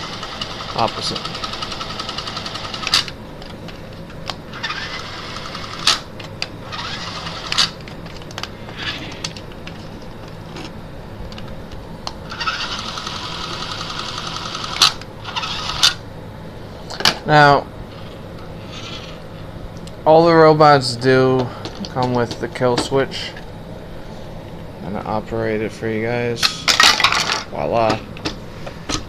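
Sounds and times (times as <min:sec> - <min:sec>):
toy robot motors whirring: 0:00.0 - 0:03.1, 0:04.5 - 0:07.8, 0:08.7 - 0:09.4, 0:12.3 - 0:16.0.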